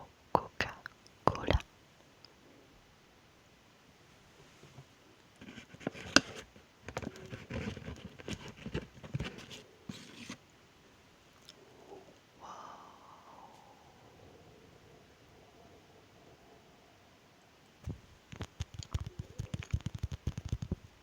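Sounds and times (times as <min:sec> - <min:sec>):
mouth chewing and smacking: 0:18.3 - 0:20.8.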